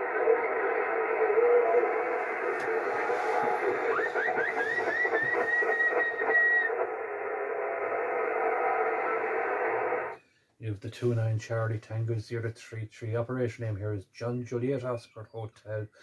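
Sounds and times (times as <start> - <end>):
radio band noise hiss: 0.0 - 10.1, 10.8 - 13.8
rising tones into held whistle: 2.7 - 7.0.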